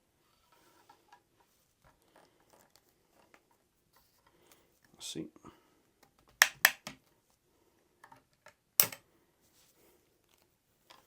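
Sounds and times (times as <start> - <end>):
cleaning rod clicking in rifle barrel: 6.4 - 6.9.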